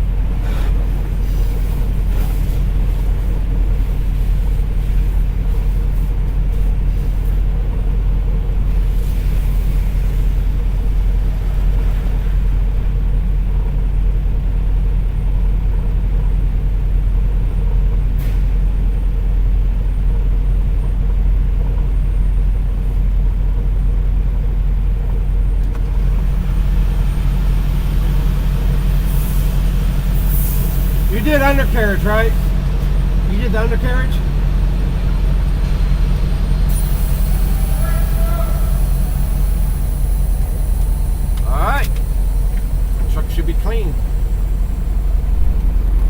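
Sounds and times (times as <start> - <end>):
diesel truck engine idling: 0.0 - 46.0.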